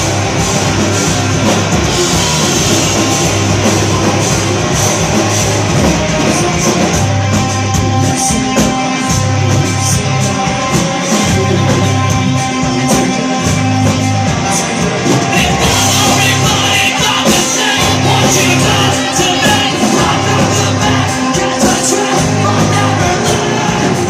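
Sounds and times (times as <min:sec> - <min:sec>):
heavy cymbals: 0:00.0 - 0:24.0
live rock band: 0:00.0 - 0:24.0.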